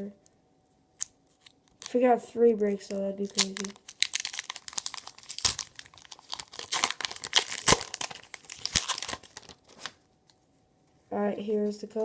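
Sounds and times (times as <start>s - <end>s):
foil wrapper tearing and crinkling: 1.4s - 2.0s, 2.8s - 10.0s.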